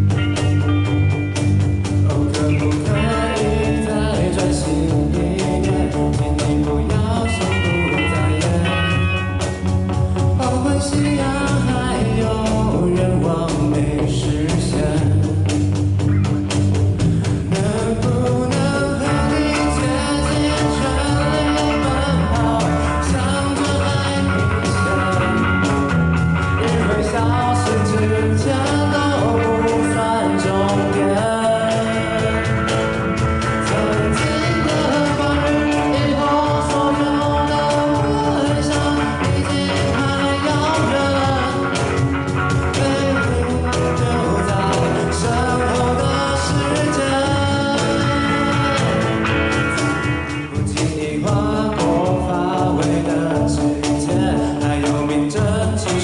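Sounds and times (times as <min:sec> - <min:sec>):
live band playing pop-rock: 0:00.0 - 0:56.0.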